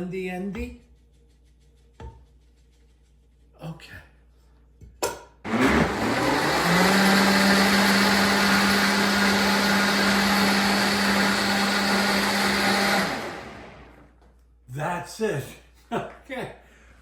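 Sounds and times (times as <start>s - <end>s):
blender motor whirring: 5.5s - 14.0s.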